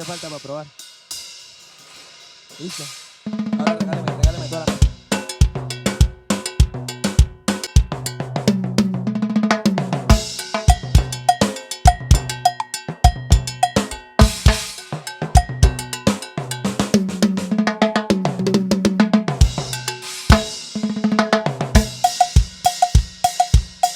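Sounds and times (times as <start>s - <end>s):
drum kit groove: 0.0s - 23.9s
cowbell: 3.7s - 9.1s, 9.8s - 18.3s, 19.4s - 21.1s, 21.8s - 23.9s.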